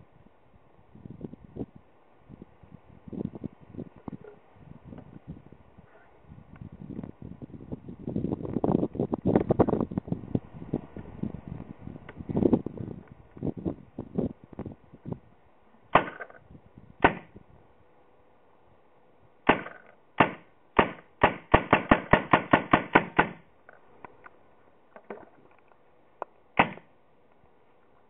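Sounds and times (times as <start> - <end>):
paintball marker shots: 16.0 - 16.4, 17.0 - 17.3, 19.5 - 23.4, 26.6 - 26.9.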